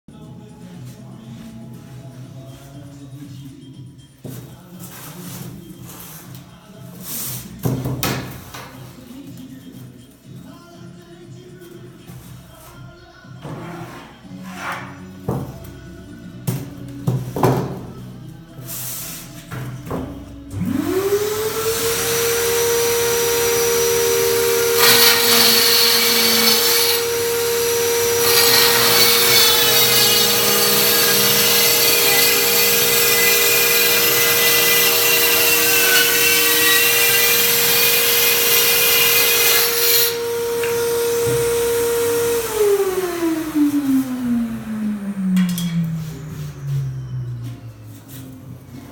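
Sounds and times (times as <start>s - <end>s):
vacuum cleaner motor whine: 20.5s - 48.9s
cordless power tool running: 20.6s - 47.5s.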